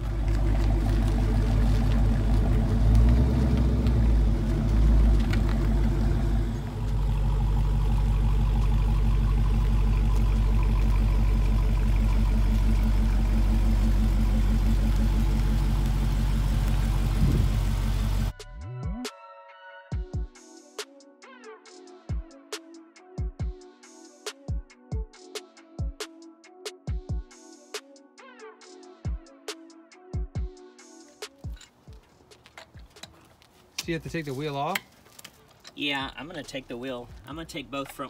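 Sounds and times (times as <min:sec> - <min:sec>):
car engine idling: 0:00.0 - 0:18.3.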